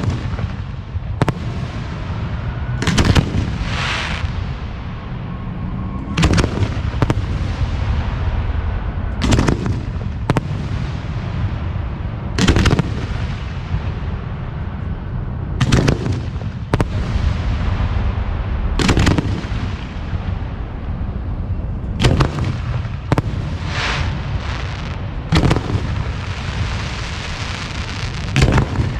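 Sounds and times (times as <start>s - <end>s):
firework shells booming: 0.0s - 4.8s, 9.2s - 11.7s, 12.4s - 14.0s, 15.6s - 20.5s, 21.8s - 28.9s
low rumble: 0.0s - 28.9s.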